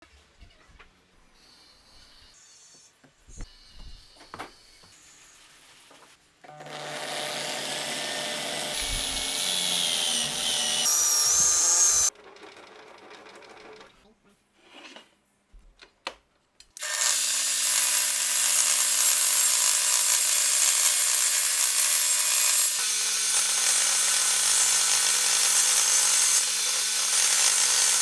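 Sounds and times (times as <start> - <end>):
disc sander whining: 6.5 - 12.1.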